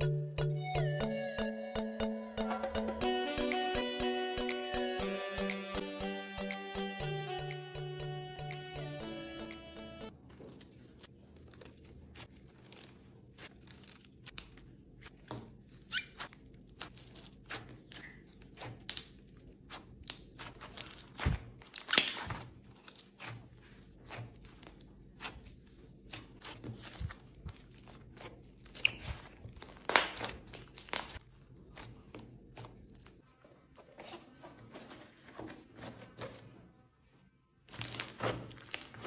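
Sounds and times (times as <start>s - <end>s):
slime squishing crackles and squeaks: 10.1s - 36.5s, 37.6s - 39.0s.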